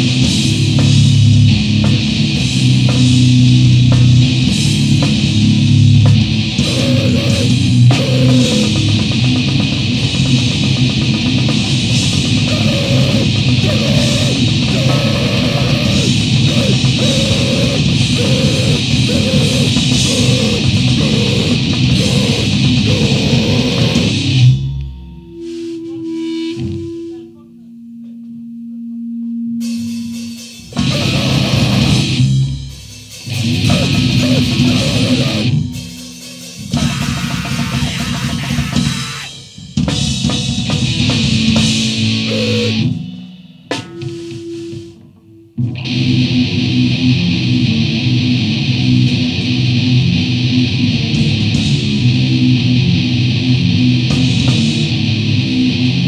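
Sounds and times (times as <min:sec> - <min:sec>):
drum kit: 0:00.0 - 0:27.4, 0:29.6 - 0:56.0
distorted noise-grind band playing: 0:00.0 - 0:56.0
repeating pitched guitar figure: 0:06.4 - 0:09.5, 0:11.9 - 0:29.0, 0:30.7 - 0:32.6, 0:33.3 - 0:39.4, 0:42.0 - 0:43.0.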